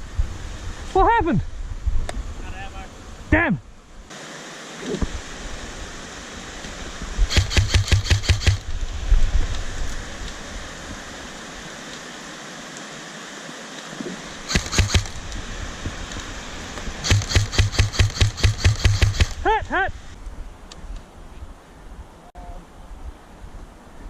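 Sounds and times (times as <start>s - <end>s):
steady rushing background: 7.2s - 8.8s, 14.3s - 20.2s
airsoft gun firing: 7.3s - 8.7s, 14.5s - 15.3s, 17.0s - 19.5s.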